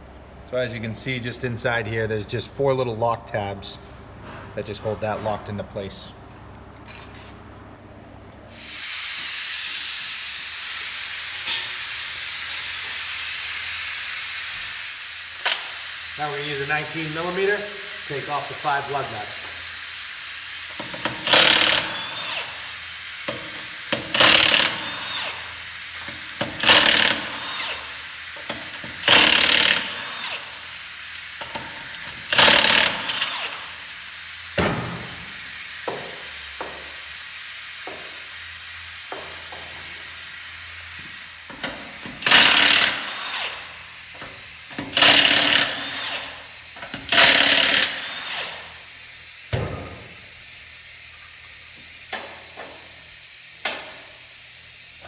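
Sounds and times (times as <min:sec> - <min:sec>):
impact wrench hammering: 0:08.5 - 0:30.7, 0:31.3 - 0:33.8, 0:34.5 - 0:37.2, 0:37.8 - 0:38.3, 0:39.0 - 0:40.0, 0:41.0 - 0:48.8, 0:49.4 - 0:50.4, 0:51.8 - 0:54.2
steady hiss: 0:08.5 - 0:55.0.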